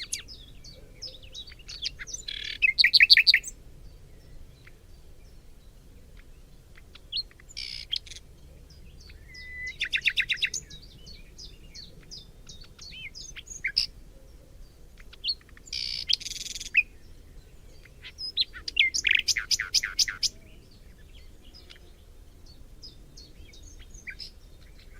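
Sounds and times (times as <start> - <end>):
bird trill: 0.0 - 3.6, 6.2 - 8.2, 9.0 - 13.9, 15.1 - 17.0, 17.7 - 20.5
buzzy bird calls: 0.0 - 3.6, 6.1 - 14.0, 15.0 - 17.0, 17.7 - 22.1
birds chirping: 0.0 - 24.9.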